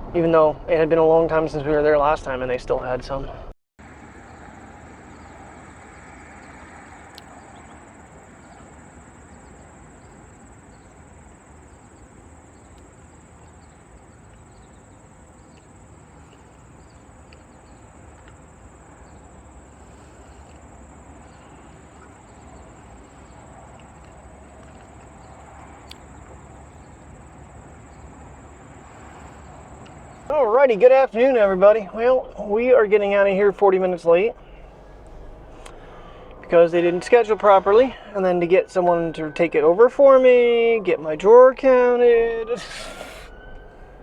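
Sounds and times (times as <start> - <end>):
low outdoor background noise: 0.0 - 44.0
insects chirring: 3.8 - 30.4, 42.5 - 43.4.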